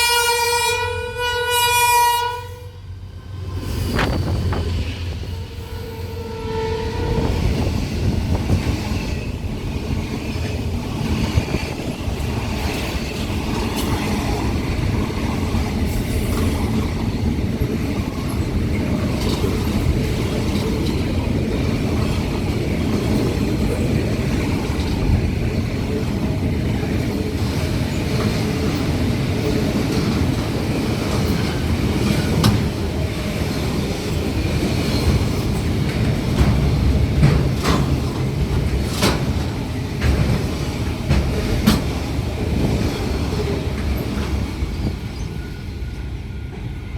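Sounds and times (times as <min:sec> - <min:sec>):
locomotive horn: 0:00.0 - 0:02.9, 0:05.1 - 0:07.6
freight train rumbling past: 0:00.0 - 0:46.9.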